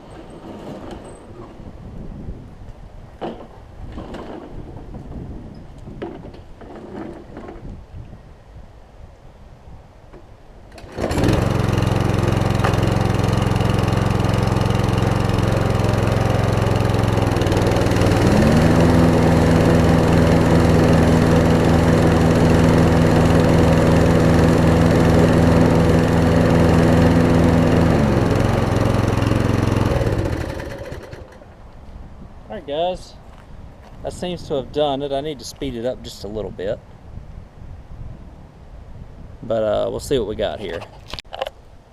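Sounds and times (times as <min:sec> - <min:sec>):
push mower engine running: 0:10.7 - 0:31.6.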